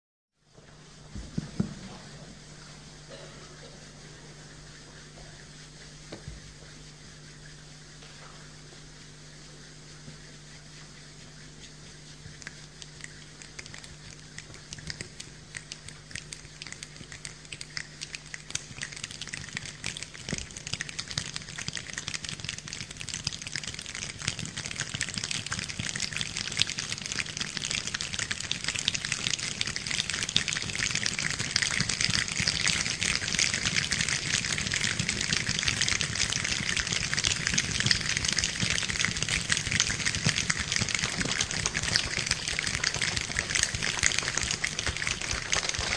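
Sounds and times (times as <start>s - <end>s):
low steady hum: 0.4s - 45.9s
rain falling: 29.0s - 45.9s.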